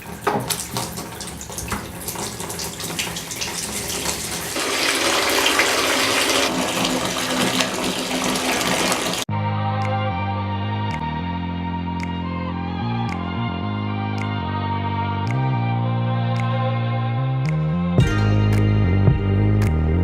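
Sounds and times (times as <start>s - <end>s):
bath tap running: 0.0s - 9.3s.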